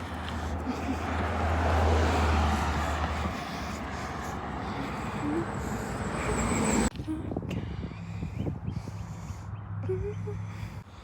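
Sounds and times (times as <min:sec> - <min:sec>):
car passing by: 0:00.0 - 0:06.9
low engine hum: 0:00.0 - 0:11.0.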